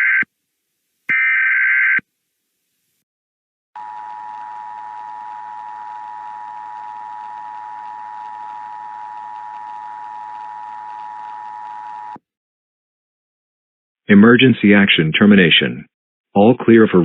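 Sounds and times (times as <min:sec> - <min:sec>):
steady two-tone alarm: 0:03.8 - 0:12.2.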